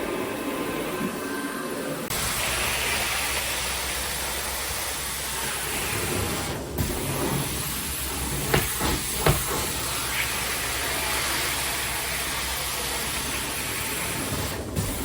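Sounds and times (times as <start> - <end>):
carpet cleaning machine hissing: 2.1 - 15.0
knocks: 8.5 - 9.8.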